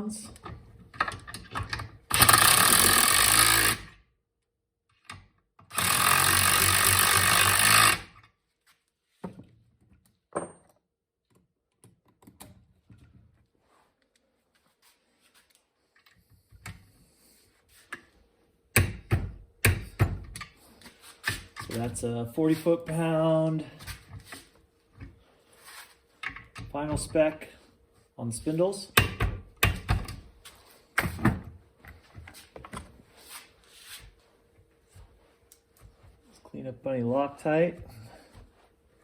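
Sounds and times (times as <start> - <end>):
power tool running: 2.1 - 3.9, 5.7 - 8.1.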